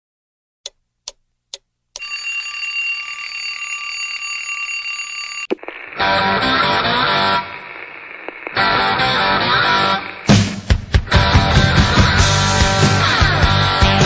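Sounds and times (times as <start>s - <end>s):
high-pitched alarm ringing: 2.0s - 5.6s
rock music with electric guitar: 5.6s - 14.0s.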